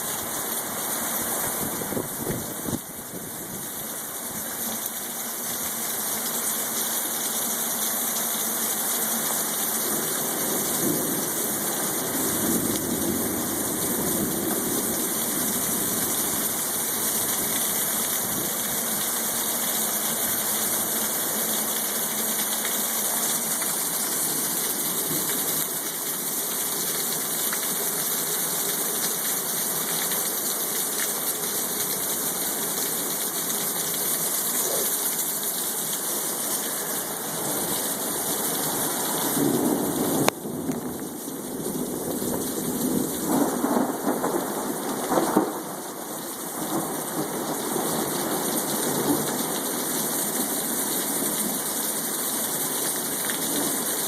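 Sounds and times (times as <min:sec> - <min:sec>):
heavy rain hissing: 0:00.0 - 0:54.0.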